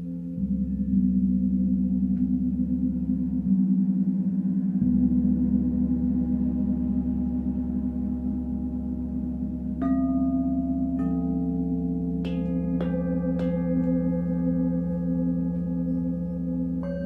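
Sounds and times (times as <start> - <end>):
singing bowls ringing: 0.0 - 17.0
singing bowl strikes: 9.8 - 17.0.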